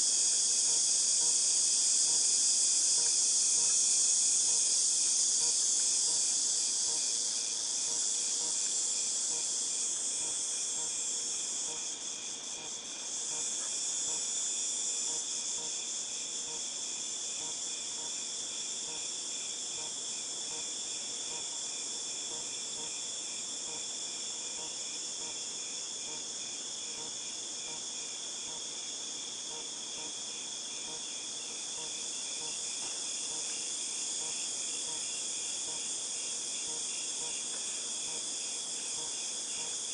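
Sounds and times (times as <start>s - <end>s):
cicadas buzzing: 0.0s - 39.9s.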